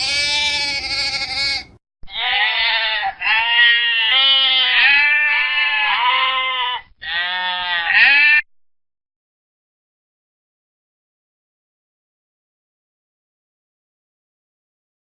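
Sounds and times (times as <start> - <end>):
sheep baaing: 0.0 - 8.5.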